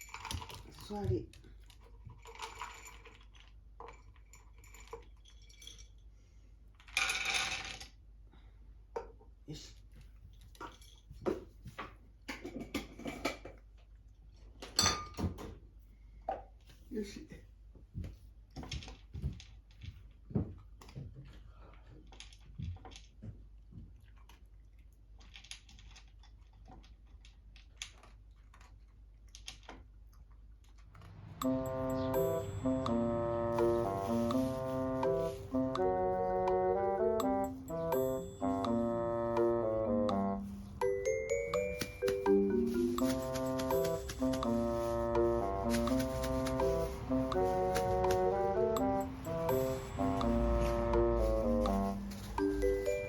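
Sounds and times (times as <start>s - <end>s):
dog crunching dry food: 0.0s - 5.2s, 22.0s - 23.2s, 24.0s - 31.2s.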